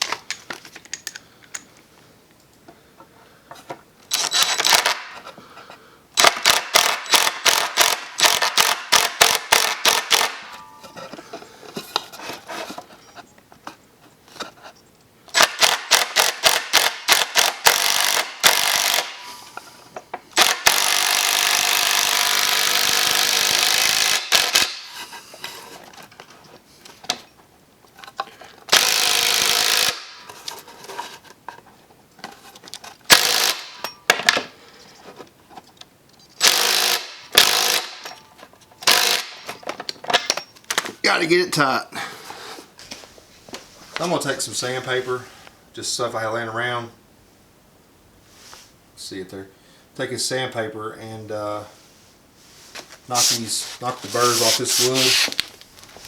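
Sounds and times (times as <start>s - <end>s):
power tool rapid clicking: 4.1s - 5.1s, 6.2s - 10.4s, 15.4s - 19.3s, 20.4s - 25.0s, 28.7s - 30.2s, 33.1s - 33.8s, 36.4s - 38.0s, 38.8s - 39.5s
power tool motor running: 16.0s - 19.4s, 20.4s - 24.7s, 28.8s - 30.1s, 33.1s - 33.8s, 36.4s - 38.0s, 38.8s - 39.4s.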